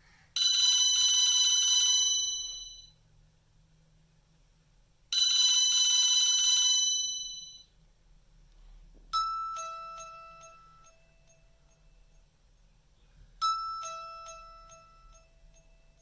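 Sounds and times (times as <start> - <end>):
bell-like phone ringtone: 0.4 - 2.9, 5.2 - 7.7, 13.4 - 16.0
buzzy phone chime: 0.4 - 2.9, 5.2 - 7.7.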